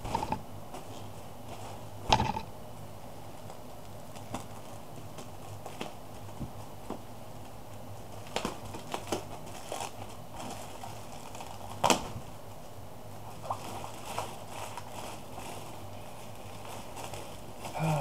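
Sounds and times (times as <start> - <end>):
package rustling: 8.2 - 12.1, 13.4 - 17.8.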